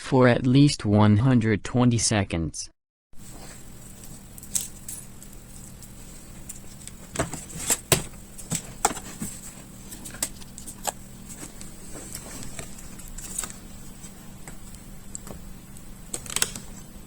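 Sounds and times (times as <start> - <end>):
faint steady hum: 3.2 - 17.0
tools clicking on laptop internals: 16.1 - 16.8.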